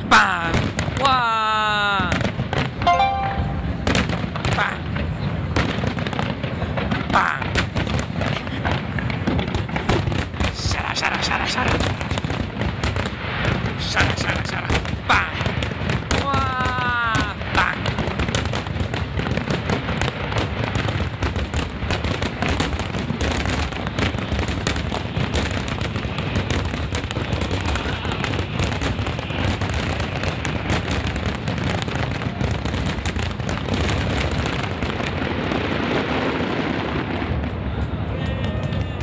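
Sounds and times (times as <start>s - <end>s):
fireworks crackles and pops: 0.0s - 39.0s.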